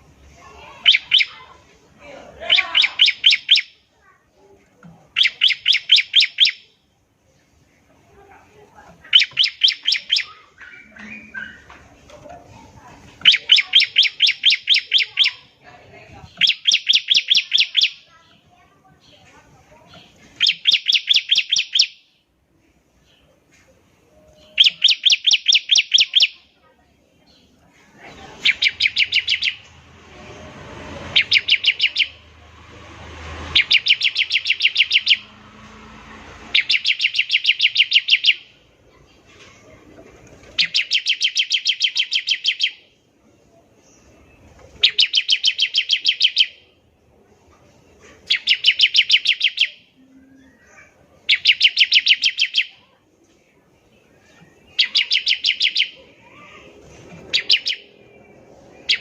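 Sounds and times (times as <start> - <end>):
bird rapid trills: 0.8 - 1.6, 2.4 - 3.8, 5.1 - 6.7, 9.1 - 11.7, 16.4 - 18.1, 20.4 - 22.0, 24.6 - 26.3, 28.4 - 38.5, 48.3 - 49.8, 54.7 - 56.7, 57.3 - 58.0.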